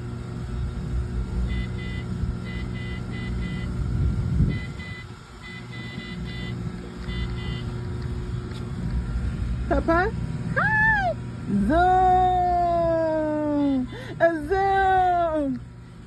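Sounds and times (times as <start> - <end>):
steady low rumble: 0.0 - 16.0
high electronic beeps: 1.5 - 3.8, 4.5 - 7.8.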